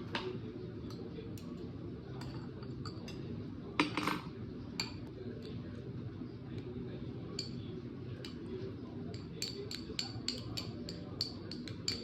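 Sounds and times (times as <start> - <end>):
metal utensil clinking against bowl: 9.1 - 12.0.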